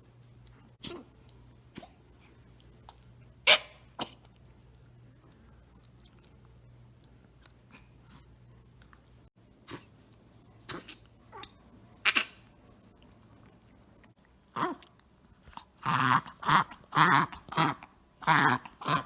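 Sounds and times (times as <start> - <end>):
small dog sneezing: 9.7 - 9.9, 10.7 - 11.0.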